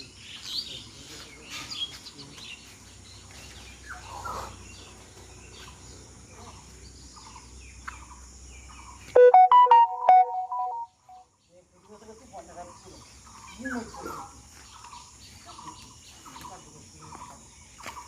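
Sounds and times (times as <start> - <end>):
birds chirping: 0.0 - 18.0
loud electronic tune: 9.2 - 10.9.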